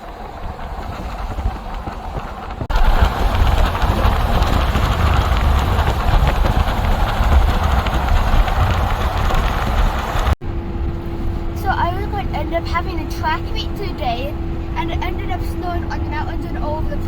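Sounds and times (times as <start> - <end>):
hail pattering: 0.0 - 10.4
steady low rumble: 0.0 - 17.0.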